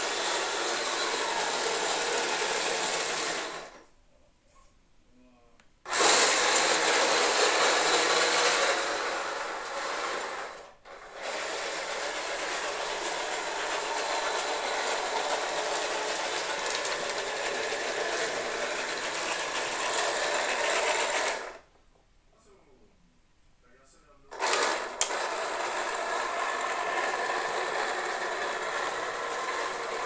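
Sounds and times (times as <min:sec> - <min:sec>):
toy tank tracks rattling: 0:11.2 - 0:21.6.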